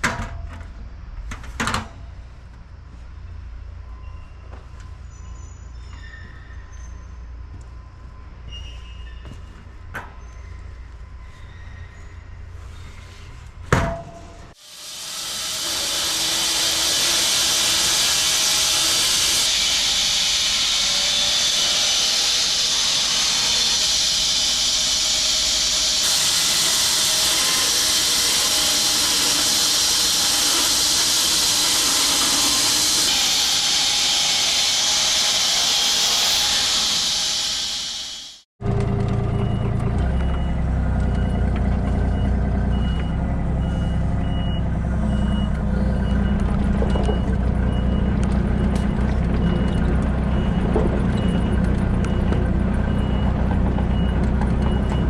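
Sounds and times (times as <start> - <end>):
loud steady rushing hiss: 14.6 - 38.4.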